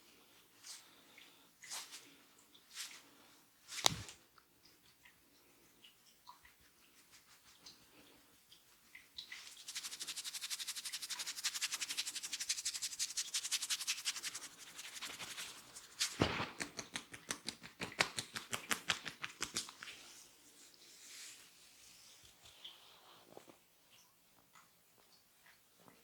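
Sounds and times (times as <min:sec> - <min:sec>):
fingers scratching through hair: 0:03.8 - 0:04.1, 0:09.4 - 0:20.1
single loud thump: 0:16.2 - 0:16.6.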